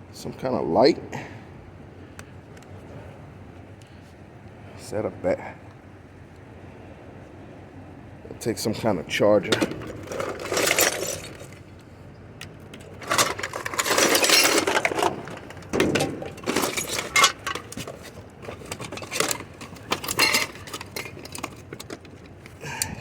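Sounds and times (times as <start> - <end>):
rummaging through junk: 9.4 - 11.7, 12.7 - 22.7
metallic clinks and rattles: 9.5 - 11.7, 12.6 - 22.6.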